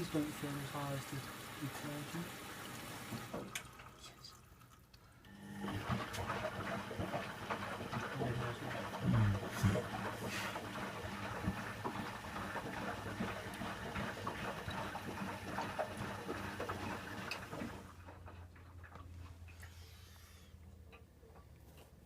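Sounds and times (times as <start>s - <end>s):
water splashing in washing machine drum: 0.0s - 3.9s, 5.5s - 19.1s
washing machine low hum: 0.0s - 4.2s, 5.3s - 22.0s.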